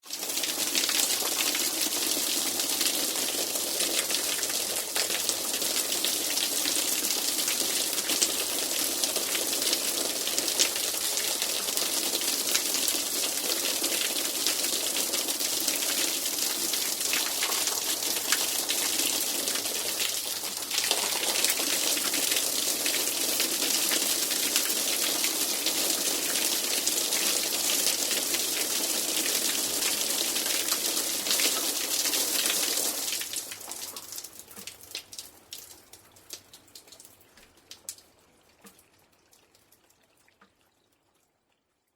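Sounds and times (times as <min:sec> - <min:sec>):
soft rain falling: 0:00.0 - 0:41.9.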